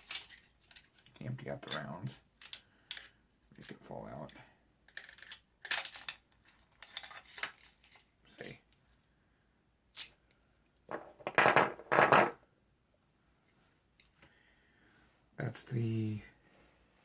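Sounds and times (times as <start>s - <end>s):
metal cartridges clattering: 0.0s - 3.2s, 4.9s - 9.1s, 9.9s - 10.3s.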